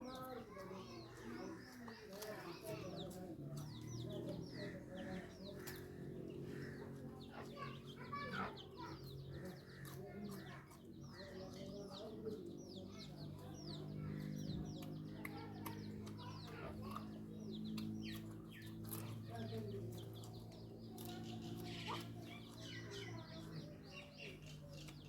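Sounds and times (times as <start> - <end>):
chickens clucking: 0.2 - 13.4.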